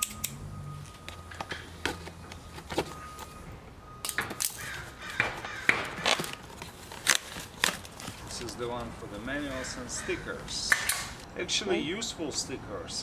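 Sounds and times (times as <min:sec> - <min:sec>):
packaging clicks and knocks: 0:01.1 - 0:03.4, 0:04.0 - 0:08.9
packaging rustling: 0:01.9 - 0:03.4, 0:04.3 - 0:09.7.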